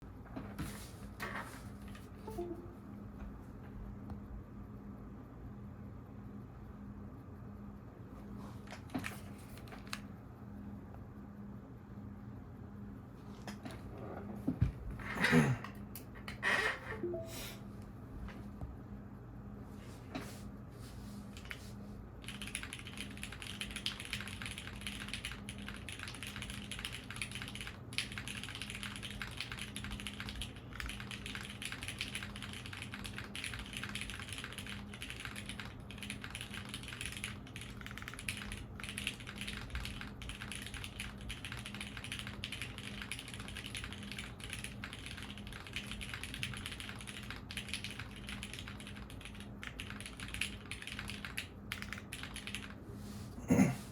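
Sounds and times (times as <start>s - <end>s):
mechanical keyboard typing: 22.2s - 52.8s.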